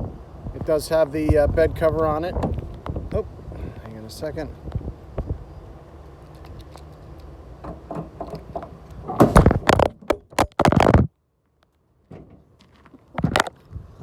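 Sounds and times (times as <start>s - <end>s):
microphone handling clicks: 8.2s - 11.1s, 13.2s - 13.6s
rubbing and knocks on microphone: 8.3s - 11.1s, 13.1s - 13.6s.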